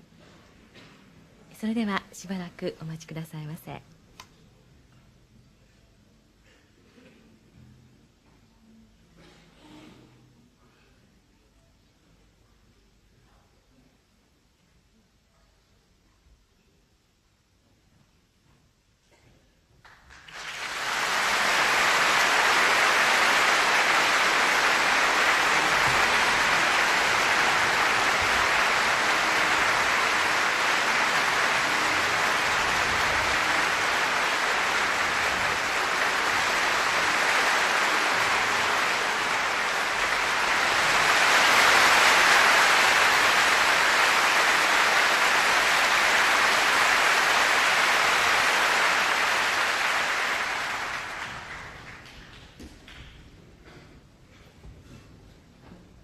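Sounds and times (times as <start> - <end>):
audience applauding: 19.9 - 53.0.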